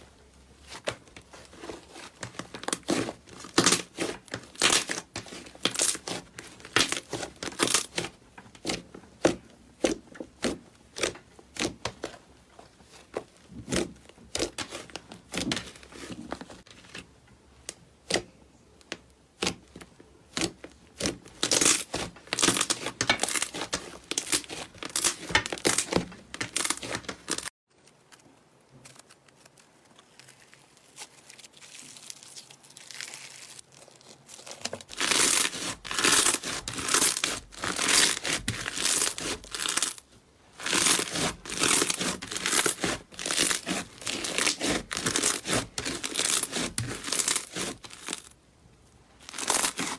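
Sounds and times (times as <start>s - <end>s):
slime crackling and popping: 49.2s - 49.9s.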